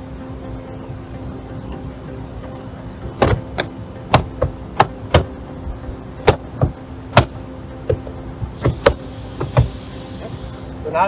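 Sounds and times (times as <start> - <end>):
hand knocking plastic panel: 3.2 - 5.3, 6.2 - 8.0.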